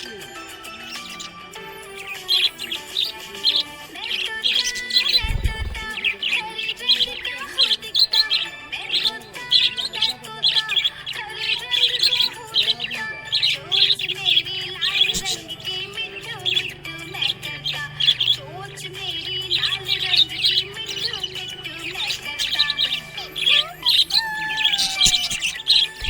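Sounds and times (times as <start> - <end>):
budgie chirping and warbling: 0.0 - 26.0.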